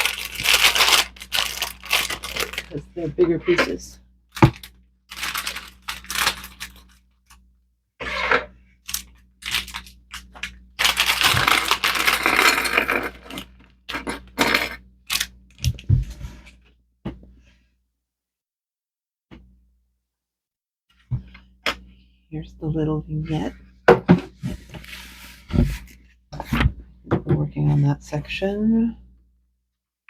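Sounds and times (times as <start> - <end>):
plastic packaging rustling: 0.0 - 7.0, 8.9 - 16.5.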